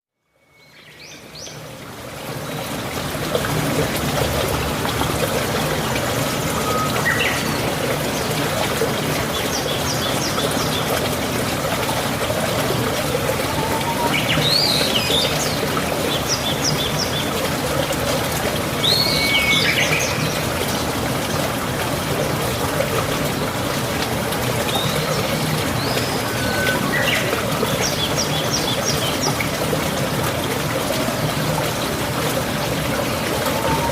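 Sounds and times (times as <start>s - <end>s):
running water: 0.6s - 33.9s
birds chirping: 6.5s - 8.4s, 13.3s - 17.3s, 24.6s - 29.6s.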